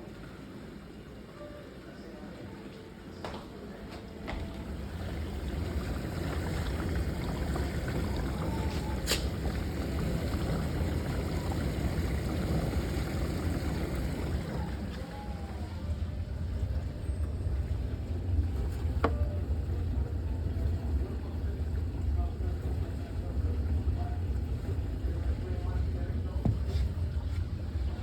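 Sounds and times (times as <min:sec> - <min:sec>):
dishwasher rumbling: 0:03.8 - 0:19.4, 0:22.9 - 0:28.0.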